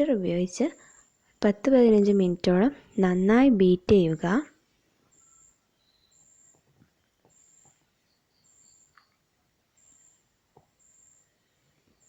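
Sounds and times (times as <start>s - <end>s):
faint ticks: 8.8s - 9.2s.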